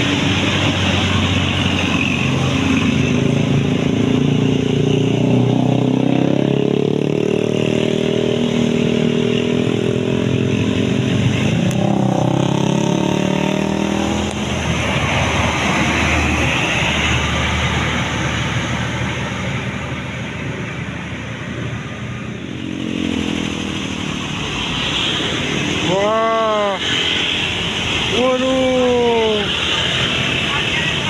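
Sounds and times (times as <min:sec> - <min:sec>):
bus engine accelerating: 0:00.0 - 0:31.0.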